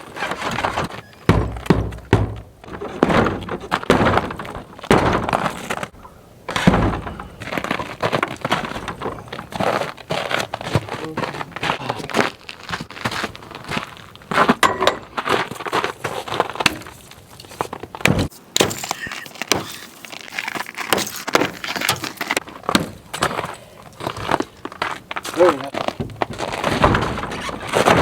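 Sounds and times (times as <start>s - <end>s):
heavy thuds on barn door: 0.4s - 5.5s, 6.5s - 7.4s.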